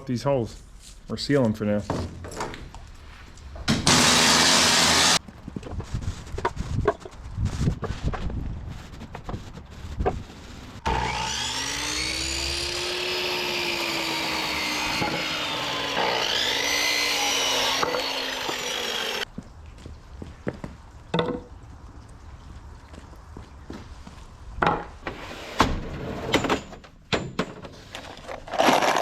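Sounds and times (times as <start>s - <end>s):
electric power tool running: 3.8s - 5.2s, 10.8s - 19.2s.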